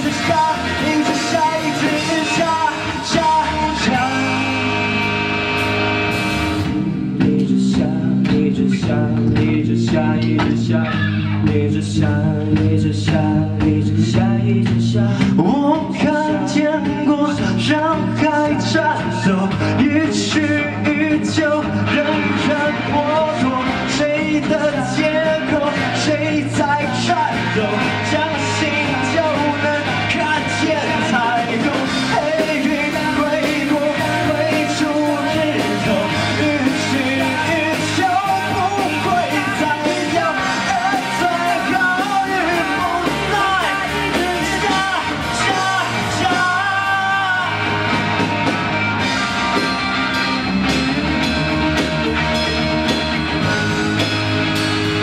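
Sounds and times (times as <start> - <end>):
person singing: 0.0 - 49.7
bass guitar: 0.0 - 55.0
drums: 0.0 - 55.0
electric guitar: 0.0 - 55.0.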